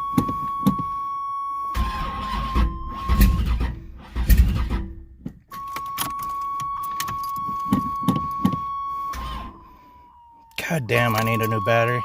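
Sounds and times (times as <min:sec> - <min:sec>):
high-pitched tone: 0:10.6 - 0:12.0.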